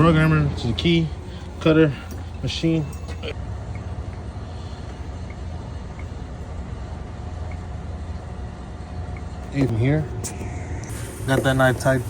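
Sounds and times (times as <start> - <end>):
background hiss: 10.8 - 12.0.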